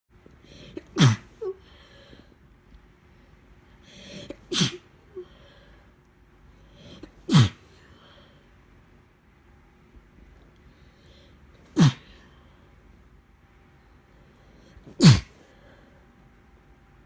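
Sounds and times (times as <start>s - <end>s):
woman sneezing: 0.7s - 1.6s, 4.2s - 4.9s, 7.1s - 7.7s, 11.7s - 12.1s, 14.9s - 15.4s.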